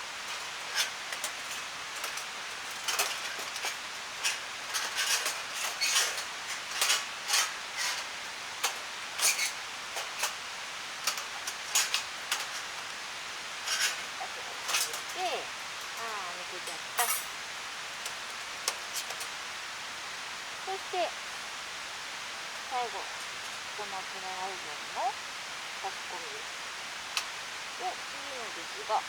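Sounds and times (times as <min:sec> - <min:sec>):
background hiss: 0:00.0 - 0:29.0
metal parts clinking and scraping: 0:00.1 - 0:17.4.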